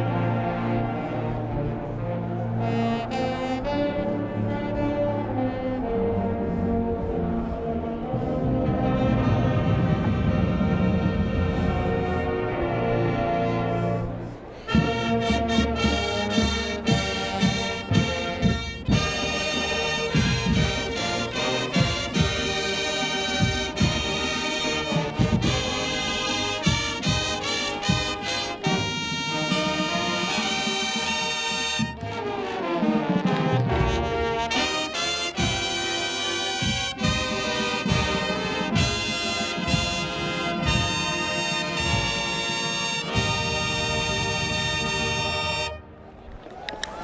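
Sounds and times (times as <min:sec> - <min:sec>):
marching band playing: 0:00.0 - 0:46.7
bass drum strokes: 0:06.4 - 0:28.9.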